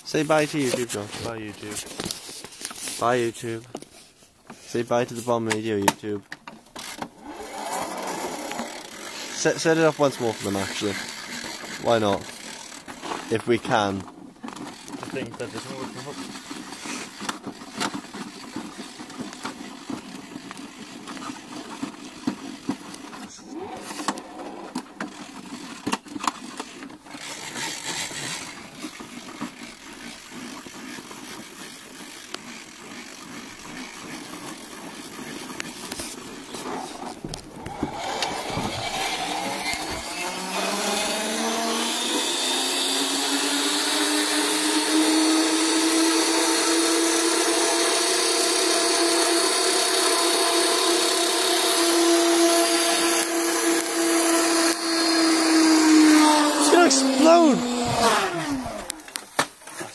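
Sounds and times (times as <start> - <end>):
hand-crank dynamo clicking and rattling: 0.0 - 59.9
dynamo whirring whine: 5.5 - 13.8, 27.9 - 59.4.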